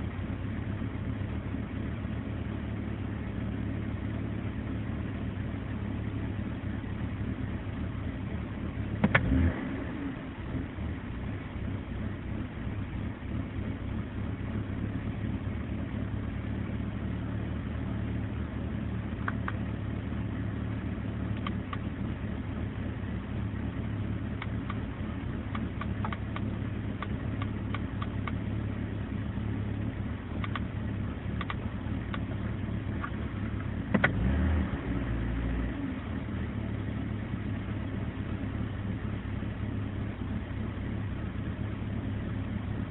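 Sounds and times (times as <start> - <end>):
sharp engine pops: 9.0 - 9.3, 33.9 - 34.2.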